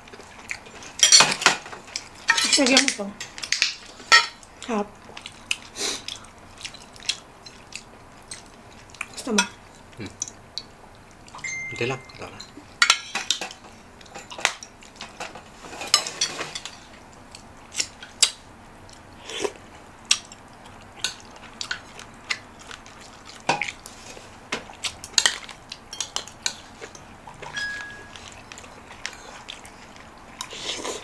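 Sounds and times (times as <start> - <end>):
cutlery clinking against dishes: 0.8 - 4.4, 11.4 - 17.0, 24.6 - 29.3.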